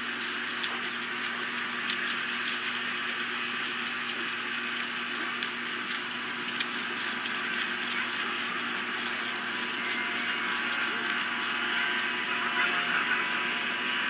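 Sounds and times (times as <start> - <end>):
faint electrical hum: 0.0 - 14.0
faint ticks: 3.8 - 9.4.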